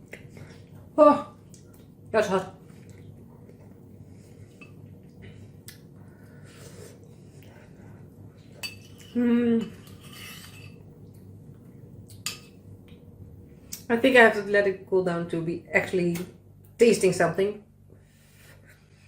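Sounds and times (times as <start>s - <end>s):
person humming: 9.1s - 9.8s.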